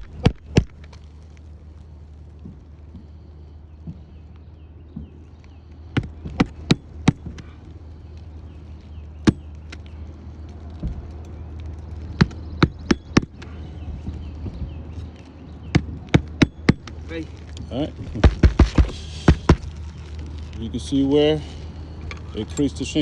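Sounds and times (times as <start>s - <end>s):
hammer driving nails into shingle: 18.2s - 19.7s.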